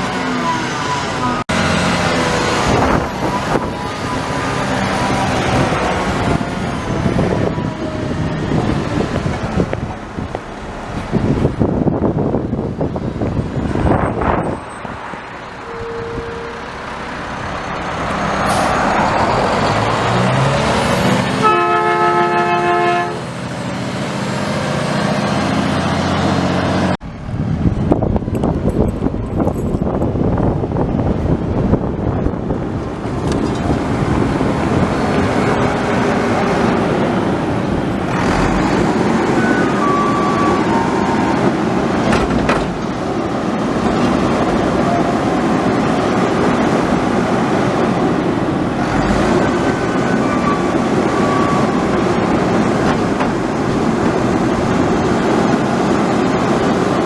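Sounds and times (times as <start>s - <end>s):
garbage truck engine running: 0.0s - 21.8s, 23.2s - 57.0s
truck horn blast: 15.6s - 17.1s, 21.2s - 23.3s.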